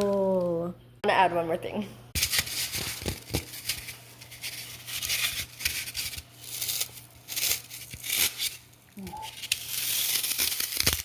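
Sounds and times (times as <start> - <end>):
hands crinkling and rustling: 2.2 - 11.0.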